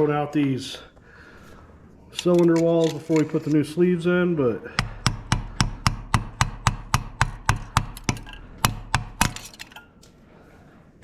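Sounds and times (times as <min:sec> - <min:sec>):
hammer striking screwdriver on metal: 0:04.8 - 0:09.8.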